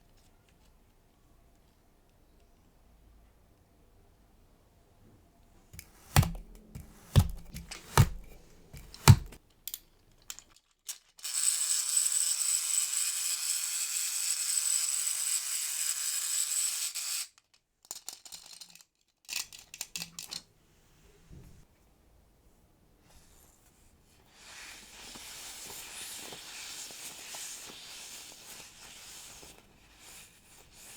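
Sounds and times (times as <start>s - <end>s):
hard objects knocking: 5.8s - 9.4s.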